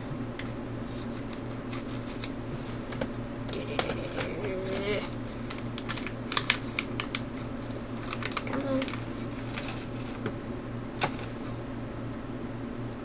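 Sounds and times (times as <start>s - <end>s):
steady low hum: 0.0s - 13.0s
packaging crinkling and clicking: 1.3s - 10.3s, 11.0s - 11.4s.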